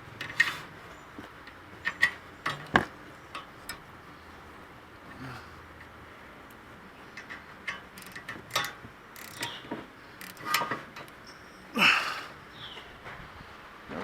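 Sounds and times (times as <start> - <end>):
hand ratchet clicking: 7.2 - 11.2.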